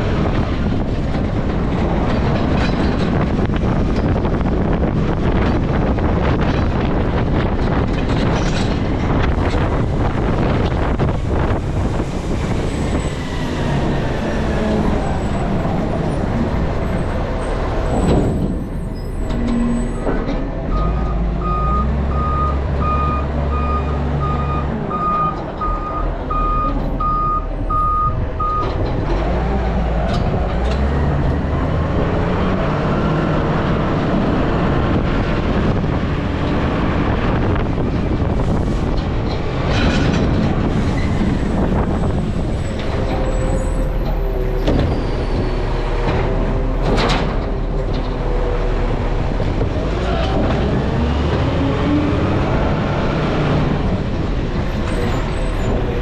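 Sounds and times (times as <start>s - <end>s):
reversing alarm beeping: 20.7s - 28.7s.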